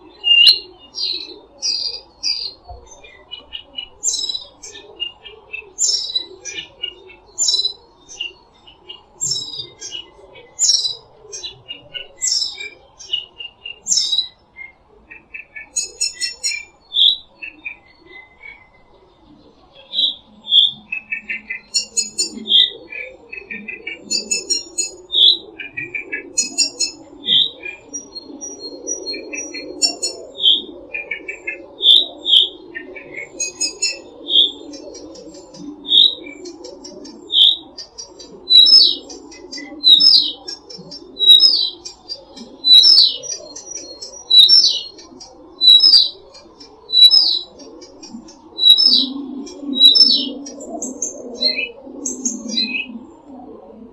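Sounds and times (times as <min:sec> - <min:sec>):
birds trilling: 0:00.0 - 0:53.1
low bird chorus: 0:00.0 - 0:53.9
bird sharp chirp: 0:15.7 - 0:16.7, 0:21.6 - 0:22.4, 0:24.1 - 0:25.0, 0:33.4 - 0:34.0.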